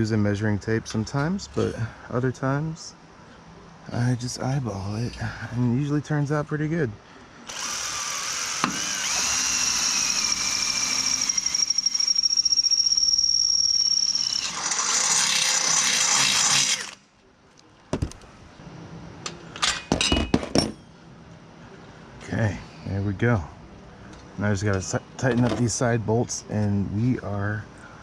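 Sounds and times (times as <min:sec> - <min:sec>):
power drill whining: 0:07.5 - 0:17.0.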